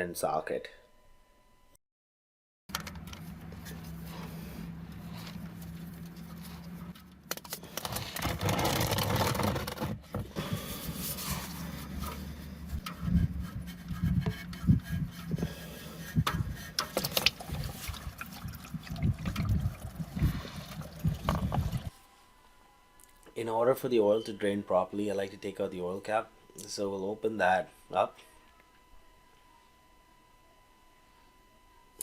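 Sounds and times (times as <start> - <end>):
steady low hum: 2.7 - 32.0.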